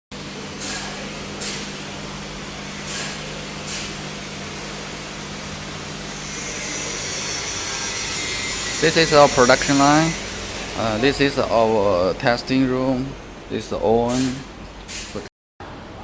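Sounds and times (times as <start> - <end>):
machine hum: 0.1 - 16.0
hissing: 0.6 - 15.3.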